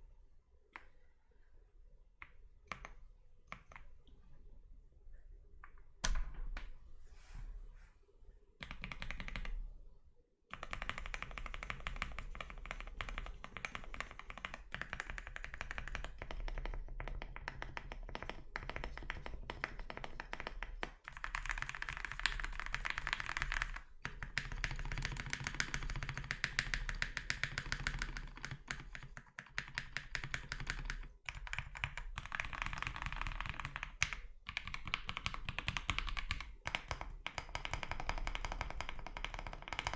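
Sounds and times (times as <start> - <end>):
fast mechanical keyboard typing: 8.6 - 9.6, 10.5 - 39.9.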